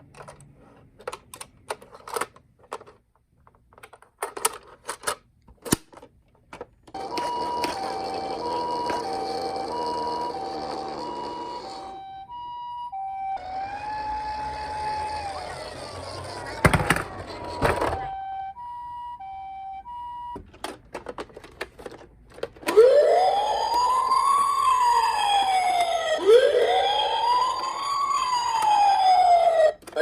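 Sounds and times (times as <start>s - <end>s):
toy electronic sirens: 6.9s - 20.4s, 22.7s - 30.0s
two-note high-low siren tone: 7.0s - 20.3s
wailing siren rising and falling: 7.0s - 20.4s, 22.7s - 30.0s
plastic clicks: 20.4s - 22.8s.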